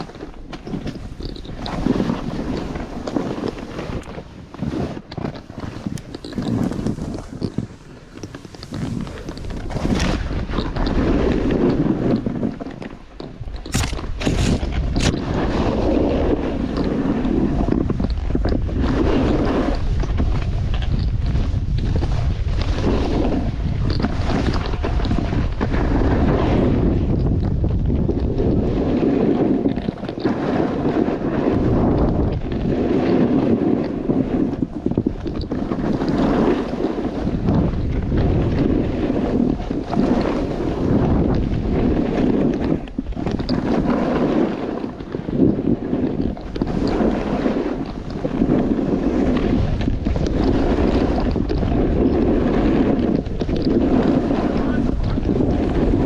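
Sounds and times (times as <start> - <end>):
skis scraping on snow: 0.0 - 56.0
wind buffeting microphone: 0.0 - 56.0
sharp scrapes or knocks: 13.6 - 15.3.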